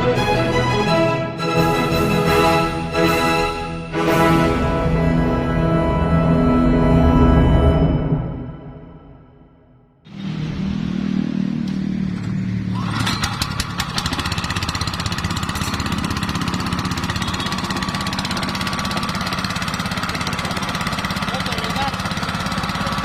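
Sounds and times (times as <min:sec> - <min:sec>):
small engine running: 0:10.1 - 0:23.0.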